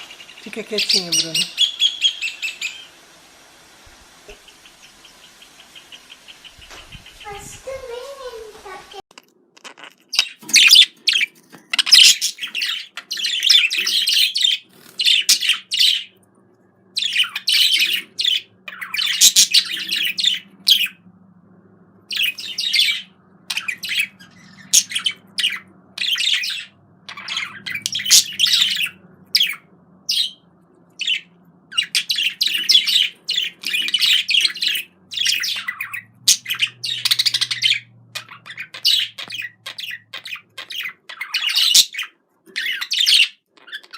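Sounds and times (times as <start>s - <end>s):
bird chattering warble: 4.3s - 9.0s, 17.0s - 21.0s, 22.1s - 43.9s.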